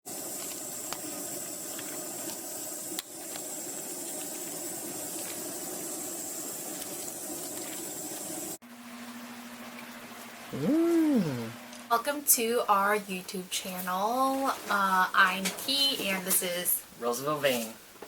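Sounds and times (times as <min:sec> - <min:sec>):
liquid bubbling hiss: 0:00.0 - 0:08.6, 0:10.4 - 0:11.7.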